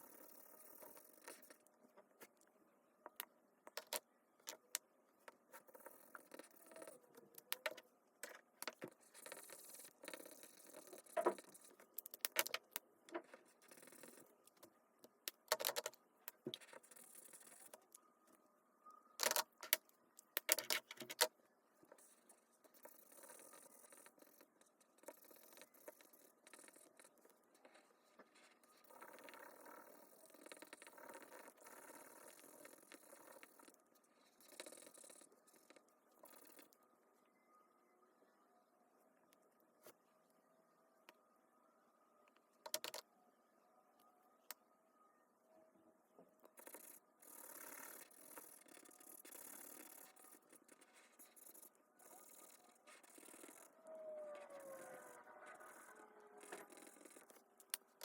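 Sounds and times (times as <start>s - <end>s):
plastic toy pieces clicking: 15.3s - 16.0s, 19.2s - 19.8s, 20.4s - 21.3s.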